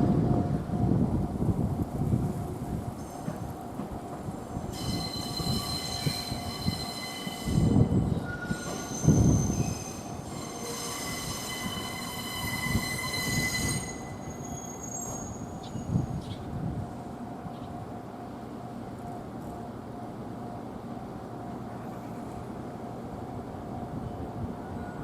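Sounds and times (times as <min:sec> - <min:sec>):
train wheels squealing: 0:04.5 - 0:16.4.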